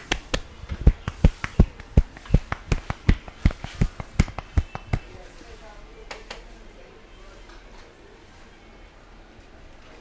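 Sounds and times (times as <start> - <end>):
hands thudding on body: 0.0 - 5.2.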